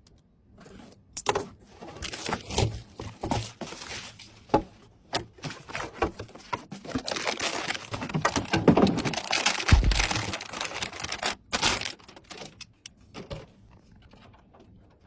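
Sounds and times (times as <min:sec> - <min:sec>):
scraping and rustling: 0:00.6 - 0:15.0.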